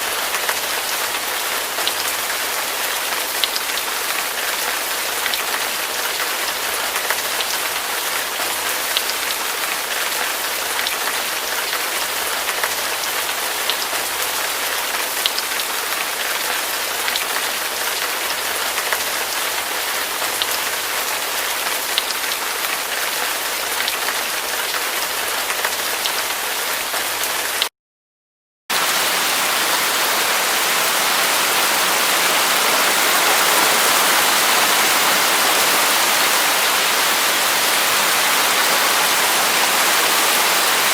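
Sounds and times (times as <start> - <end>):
heavy rain falling: 0.0 - 11.8, 28.7 - 40.9.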